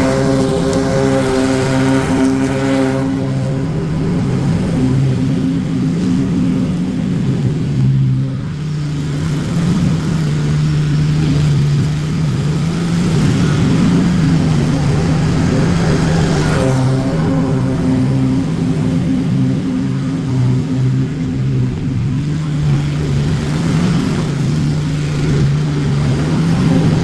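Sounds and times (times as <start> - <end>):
lawn mower engine running: 0.0 - 27.0.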